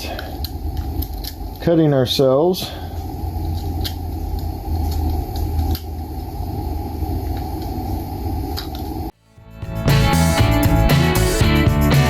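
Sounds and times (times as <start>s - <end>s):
low shop hum: 0.0s - 9.2s.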